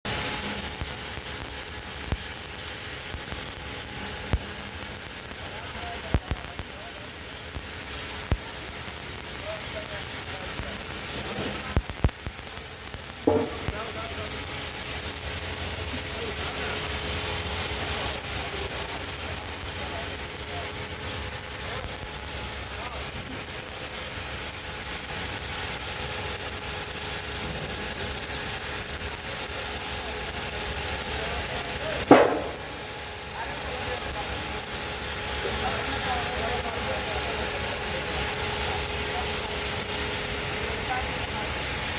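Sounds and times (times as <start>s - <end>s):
arc welding crackling hiss: 0.1s - 41.9s
sharp pop: 13.2s - 13.8s, 32.0s - 33.0s.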